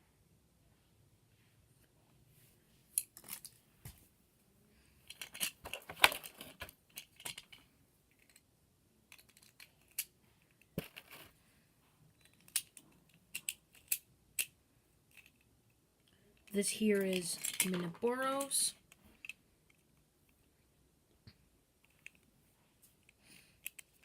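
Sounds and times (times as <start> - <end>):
handling and rustling: 2.9 - 4.2, 5.0 - 8.5, 9.1 - 11.5, 16.3 - 20.6
plastic parts clicking and rattling: 3.0 - 3.6, 5.0 - 8.5, 9.1 - 11.3, 12.2 - 14.5, 15.1 - 20.5, 21.8 - 22.3, 23.0 - 24.0.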